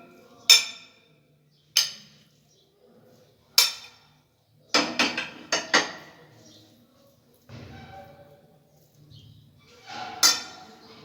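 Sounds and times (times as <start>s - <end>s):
utensil clinking against dish: 3.6s - 4.1s, 4.8s - 6.2s, 10.0s - 10.8s.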